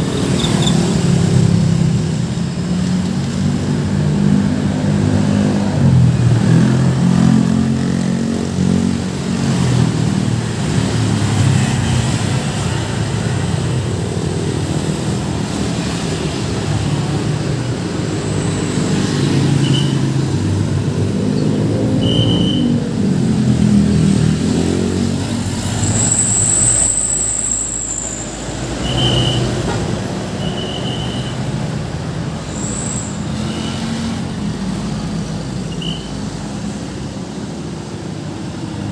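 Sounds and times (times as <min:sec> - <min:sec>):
vehicle engines rumbling: 0:00.0 - 0:38.9
long high squeal: 0:25.8 - 0:29.5.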